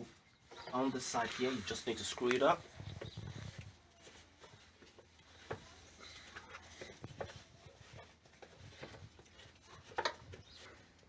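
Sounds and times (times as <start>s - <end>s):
air filter clicking and scraping: 4.4s - 10.8s.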